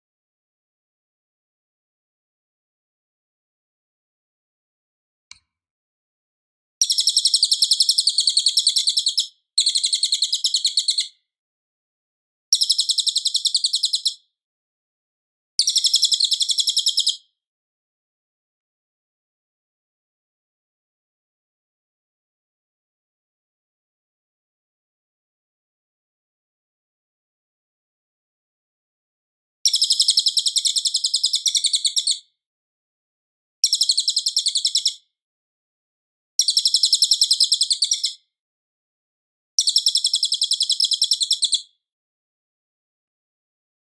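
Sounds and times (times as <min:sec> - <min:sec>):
high-pitched bird trill: 0:06.8 - 0:11.1, 0:12.6 - 0:14.2, 0:15.6 - 0:17.2, 0:29.7 - 0:32.2, 0:33.7 - 0:35.0, 0:36.4 - 0:38.2, 0:39.6 - 0:41.7.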